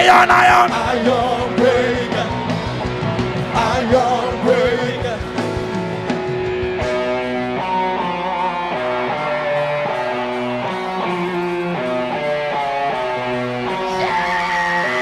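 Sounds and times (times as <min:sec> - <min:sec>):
drum hits: 0:00.0 - 0:07.3
live band playing: 0:00.0 - 0:15.0
guitar melody of held notes: 0:00.6 - 0:15.0.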